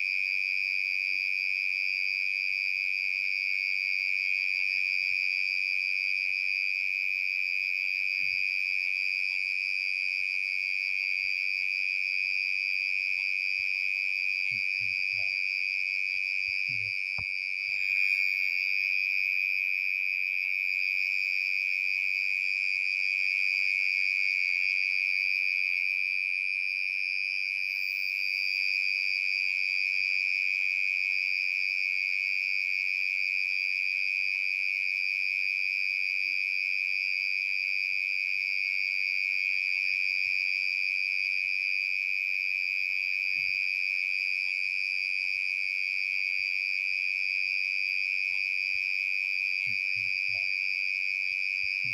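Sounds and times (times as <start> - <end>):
cricket trilling: 0.0 - 51.9.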